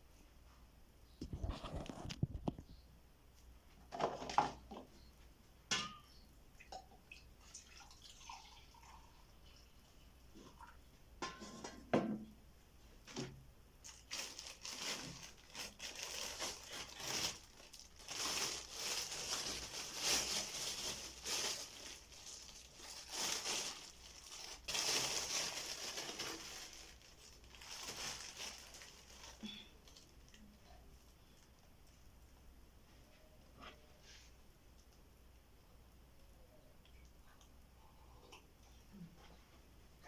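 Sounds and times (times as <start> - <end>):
crinkling and rustling: 1.2 - 2.8, 12.8 - 32.1.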